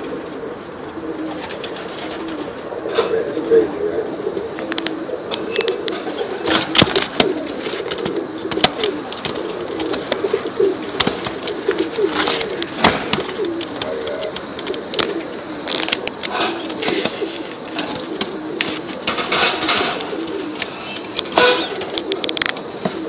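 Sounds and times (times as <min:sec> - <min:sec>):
pigeons cooing: 0:00.0 - 0:23.0
sharp clicks and knocks: 0:06.6 - 0:10.3.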